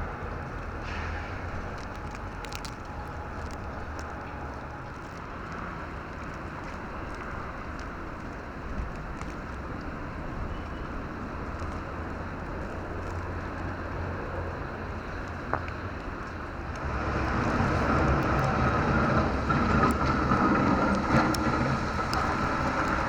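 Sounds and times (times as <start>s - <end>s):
road traffic rumble: 0.0s - 23.0s
vehicle approaching with whine: 16.6s - 23.0s.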